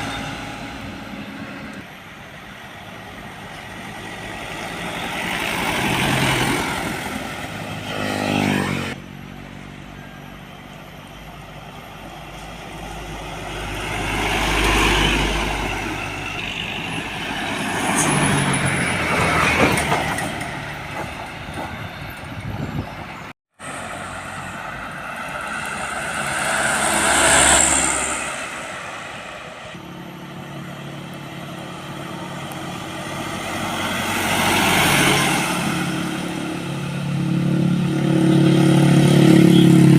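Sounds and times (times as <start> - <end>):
heavy trucks driving past: 0.0 - 39.9.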